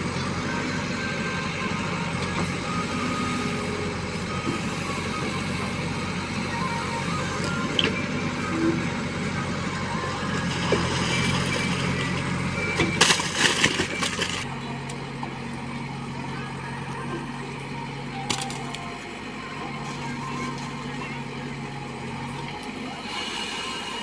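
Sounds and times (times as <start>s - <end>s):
heavy diesel engines running: 0.0s - 24.0s
bucket load crunching and rattling: 10.2s - 14.5s.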